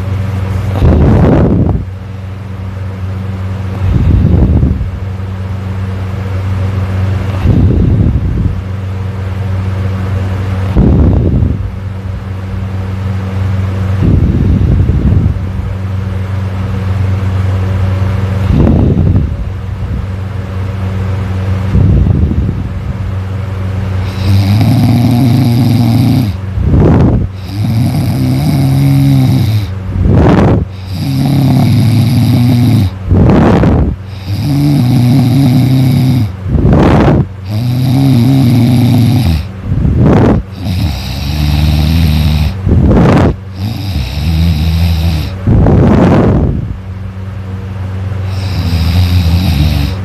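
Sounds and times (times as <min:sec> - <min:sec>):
person snoring loudly: 0:24.0 - 0:46.5, 0:48.2 - 0:50.0.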